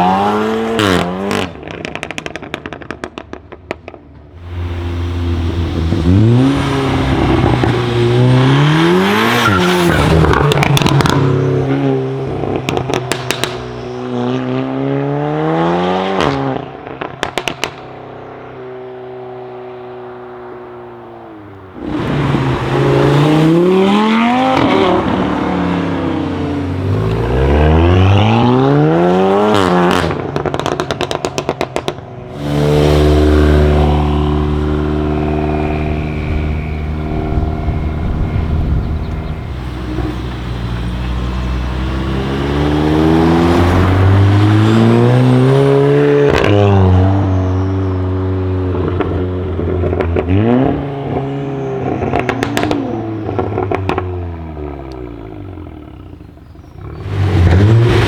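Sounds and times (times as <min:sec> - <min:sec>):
exhaust crackles and pops: 0:01.4 - 0:04.5, 0:09.9 - 0:11.4, 0:12.3 - 0:14.2, 0:16.2 - 0:18.6, 0:29.5 - 0:42.0, 0:48.7 - 0:58.0
car engine accelerating hard: 0:04.4 - 0:17.7, 0:18.9 - 0:58.0.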